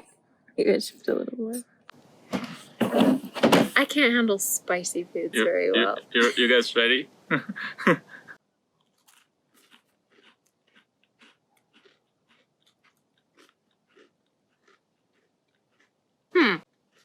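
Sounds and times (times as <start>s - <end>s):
crackers being chewed: 8.7s - 17.0s.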